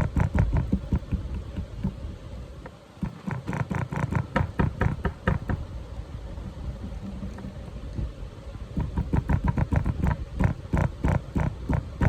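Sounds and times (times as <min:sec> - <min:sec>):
chisel chipping at plaster: 0:00.0 - 0:02.0, 0:03.0 - 0:05.6, 0:08.8 - 0:12.0.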